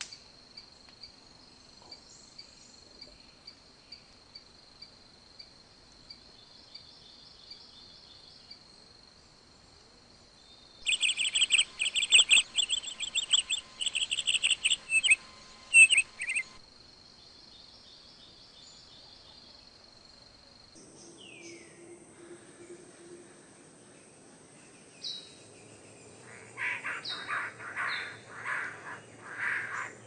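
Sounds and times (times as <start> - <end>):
bird chirping and trilling: 10.8 - 16.6
high insect trill: 10.8 - 17.3.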